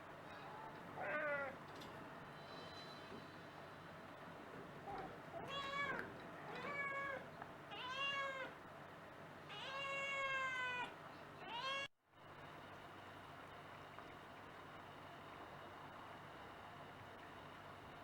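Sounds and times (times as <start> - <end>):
cat meowing: 1.0 - 1.6, 5.4 - 8.6, 9.5 - 11.9.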